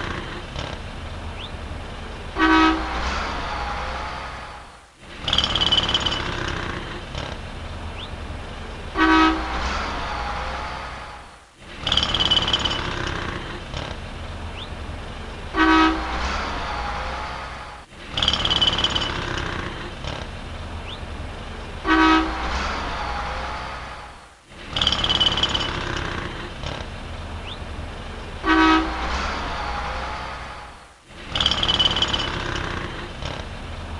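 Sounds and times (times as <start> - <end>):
city street traffic: 0.0 - 33.9
car horn honk: 2.4 - 3.0, 8.9 - 9.6, 15.5 - 16.3, 21.8 - 22.5, 28.4 - 30.3.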